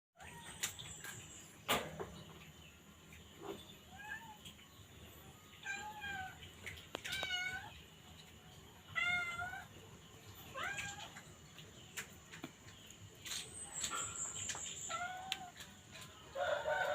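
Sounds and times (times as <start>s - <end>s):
cat meowing: 8.9s - 9.7s, 10.5s - 11.2s, 14.9s - 15.6s.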